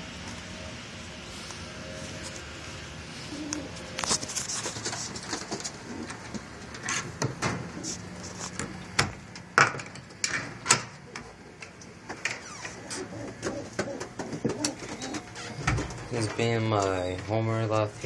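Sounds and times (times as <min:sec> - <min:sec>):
rustling: 0:01.3 - 0:07.1.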